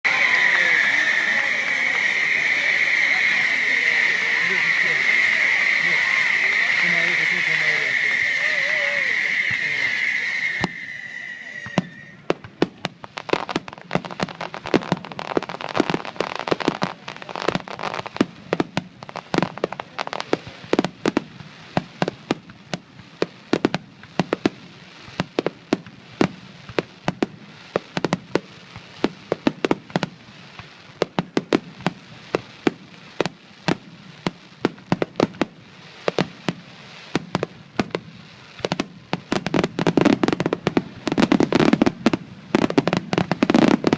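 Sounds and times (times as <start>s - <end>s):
fireworks bangs and pops: 0.0s - 43.9s
fireworks crackle: 0.0s - 43.9s.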